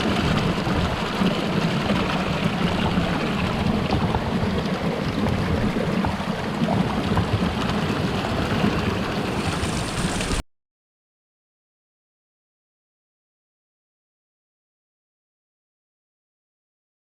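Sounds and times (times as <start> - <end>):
stream water gurgling under ice: 0.0 - 10.4.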